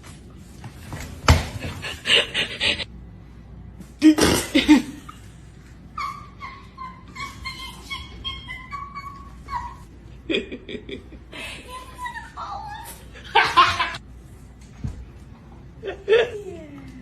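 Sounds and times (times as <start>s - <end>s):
dog whining: 6.0s - 9.9s.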